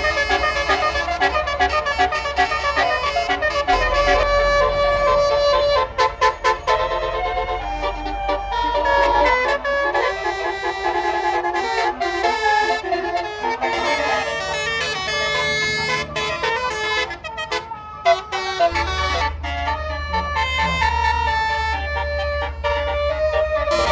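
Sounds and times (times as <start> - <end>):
musical bus horn melody: 0.0 - 23.9
low rumble: 2.8 - 10.0.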